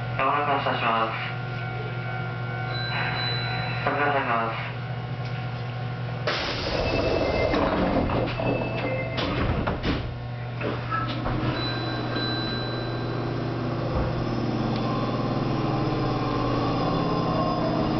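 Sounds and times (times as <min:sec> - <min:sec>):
train electrical hum: 0:00.0 - 0:17.9
train sliding doors closing: 0:06.3 - 0:12.6, 0:13.2 - 0:17.9.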